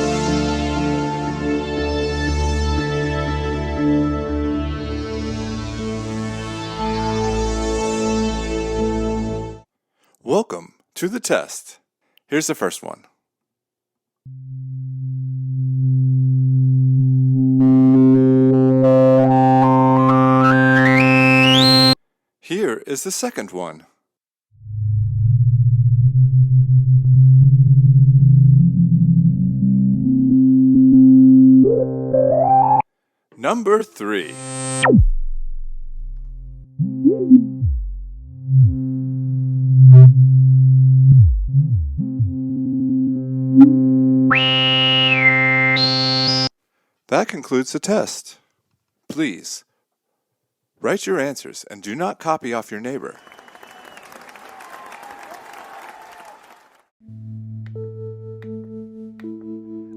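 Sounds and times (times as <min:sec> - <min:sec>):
synthesizer low note with filter sweep: 0:14.3 - 0:22.0, 0:24.6 - 0:32.8, 0:34.3 - 0:46.5
analog synth note with pitch swoops: 0:34.3 - 0:46.5
bright synth filter sweep: 0:34.3 - 0:46.5.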